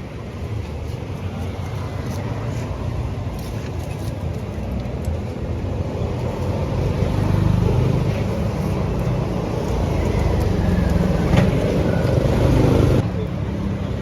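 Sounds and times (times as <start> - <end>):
low traffic rumble: 0.0 - 14.0.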